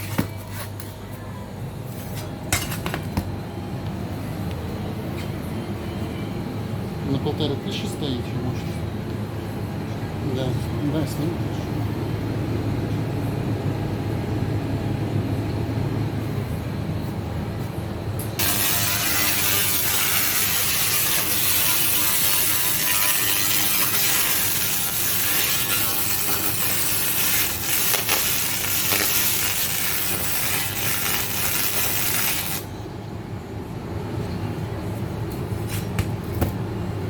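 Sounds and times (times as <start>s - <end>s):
low machine hum: 0.0s - 37.0s
laser cleaning machine hissing: 18.4s - 32.7s.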